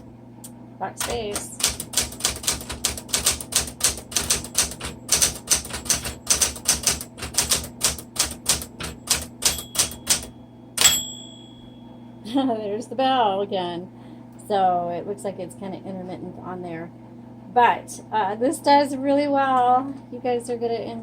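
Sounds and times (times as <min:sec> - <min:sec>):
typewriter key strikes: 0:01.0 - 0:11.2
typewriter margin bell ring: 0:08.2 - 0:11.8.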